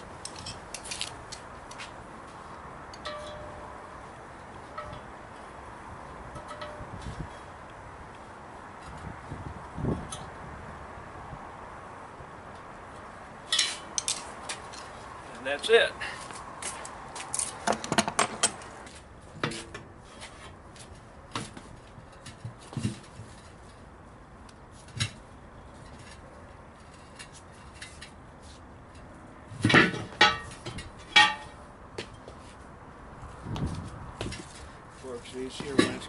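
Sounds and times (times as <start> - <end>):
ringing metal clanks: 2.9 - 3.8, 4.7 - 5.1, 6.3 - 7.0, 29.7 - 31.6.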